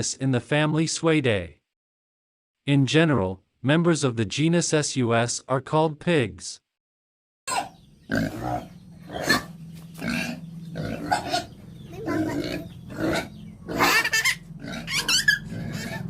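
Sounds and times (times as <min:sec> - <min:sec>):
pigs grunting and squealing: 0:07.5 - 0:16.0
steady low hum: 0:07.9 - 0:16.0.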